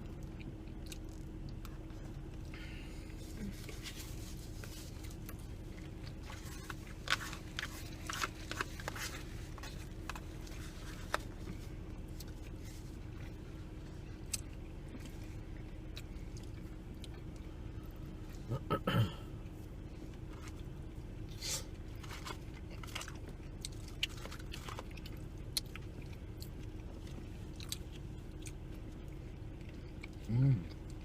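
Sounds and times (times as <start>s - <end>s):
chewing and biting food: 0.0s - 2.5s, 21.8s - 31.0s
steady low hum: 0.0s - 31.0s.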